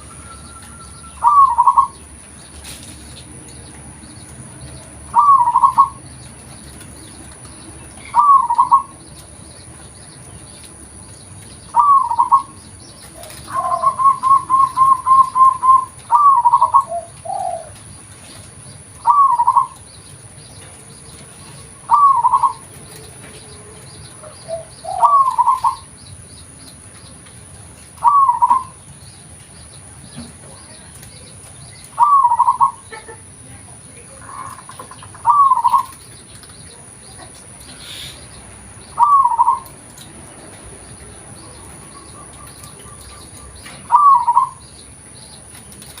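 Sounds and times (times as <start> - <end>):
dove cooing: 0.0 - 2.1, 5.1 - 6.0, 7.9 - 9.0, 11.7 - 17.8, 19.0 - 19.8, 21.5 - 23.4, 24.2 - 25.9, 28.0 - 28.8, 31.9 - 33.2, 34.2 - 36.0, 38.9 - 39.8, 41.4 - 44.6.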